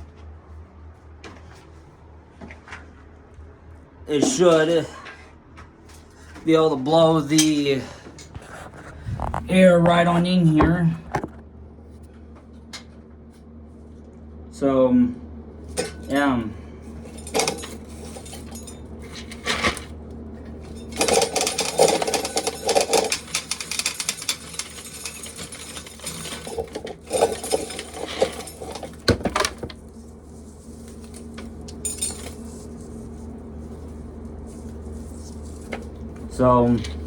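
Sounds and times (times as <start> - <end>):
box fan humming: 0.0 - 37.0
corn kernels clattering: 20.8 - 29.7.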